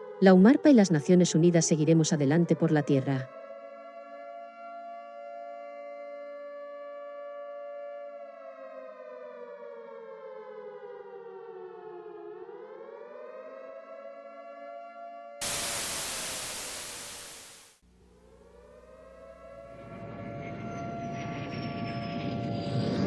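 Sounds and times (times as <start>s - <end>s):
civil defense siren wailing: 3.0s - 16.7s
static hiss burst: 15.4s - 17.8s.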